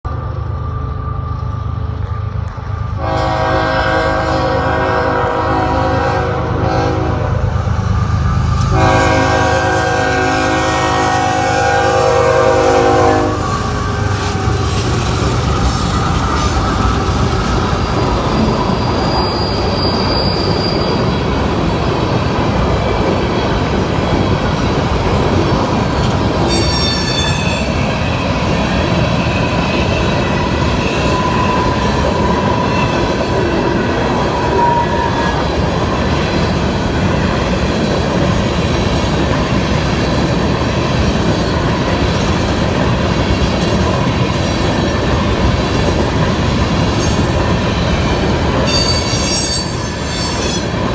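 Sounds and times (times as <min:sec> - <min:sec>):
train wheels rumbling on rails: 0:00.1 - 0:50.9
high wheel squeal: 0:11.2 - 0:21.4, 0:25.4 - 0:33.2, 0:34.2 - 0:35.5, 0:46.9 - 0:50.9.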